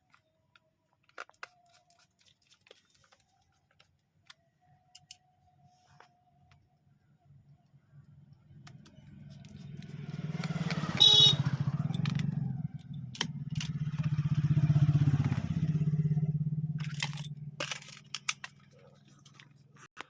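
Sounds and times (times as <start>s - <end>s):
vehicle engine passing: 8.8s - 17.6s
short high-pitched beep: 11.0s - 11.4s.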